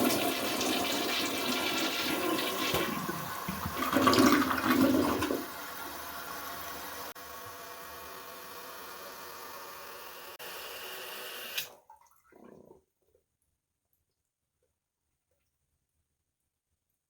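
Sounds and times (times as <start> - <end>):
toilet flushing: 0.0 - 12.9.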